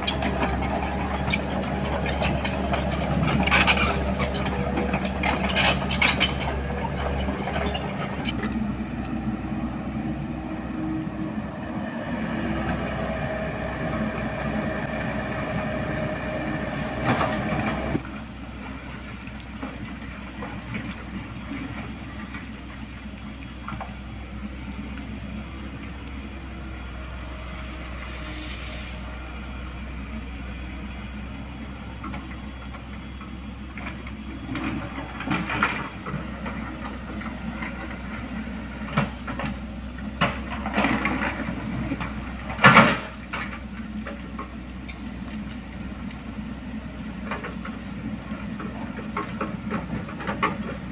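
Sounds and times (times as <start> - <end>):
faint rising whine: 0.0 - 40.2
diesel construction machine engine: 0.0 - 50.9.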